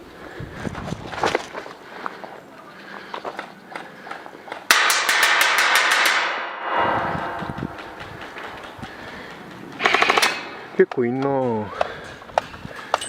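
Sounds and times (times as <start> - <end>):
loud rushing noise: 6.4 - 9.2.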